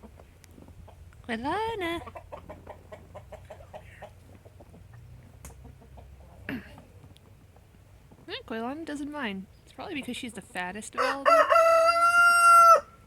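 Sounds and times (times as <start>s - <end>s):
hens clucking: 0.0s - 8.7s.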